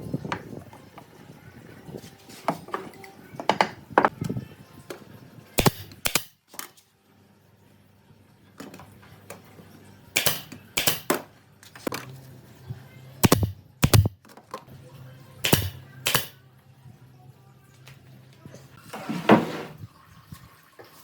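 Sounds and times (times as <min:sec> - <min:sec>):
knocks and clicks on wood: 0:13.2 - 0:14.2.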